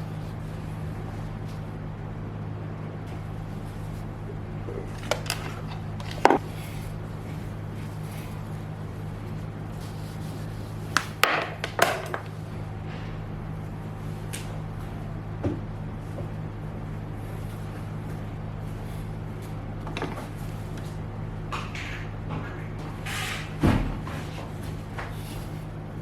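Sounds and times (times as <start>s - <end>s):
steady low hum: 0.0s - 26.0s
objects knocking and clattering: 4.6s - 6.5s, 11.2s - 12.3s.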